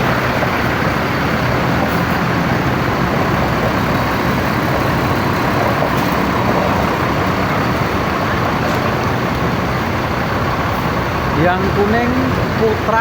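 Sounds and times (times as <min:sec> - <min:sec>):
bus engines running: 0:00.0 - 0:13.0
traffic noise: 0:00.0 - 0:13.0.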